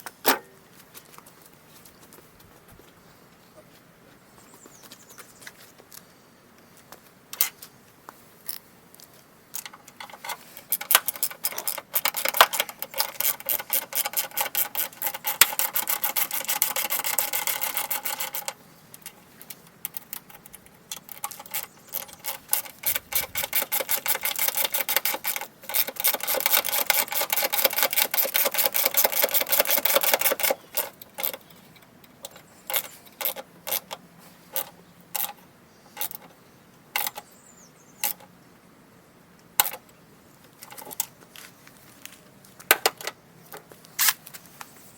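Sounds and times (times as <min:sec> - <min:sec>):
rapid mechanical clicking: 0:09.6 - 0:34.0.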